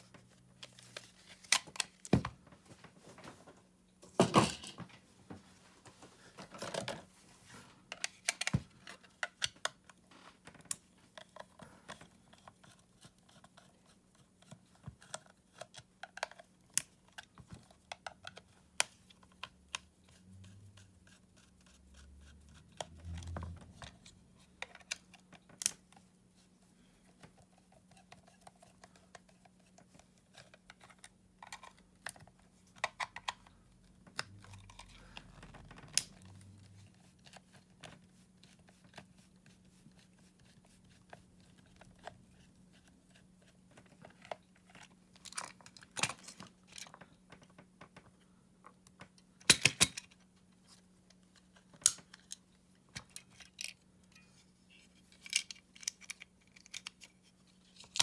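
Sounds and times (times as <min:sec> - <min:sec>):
plastic and metal parts clicking: 0:55.1 - 0:58.0.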